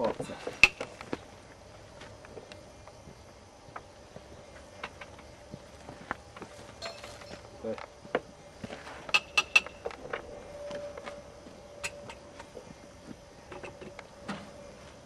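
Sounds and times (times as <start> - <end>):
metallic clicks and clinks: 6.8 - 7.4.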